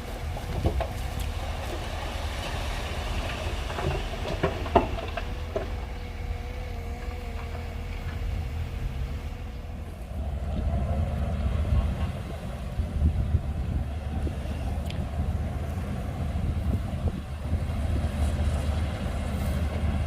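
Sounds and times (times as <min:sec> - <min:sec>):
bulldozer diesel engine rumbling: 0:00.0 - 0:20.0
knocks: 0:03.6 - 0:05.9.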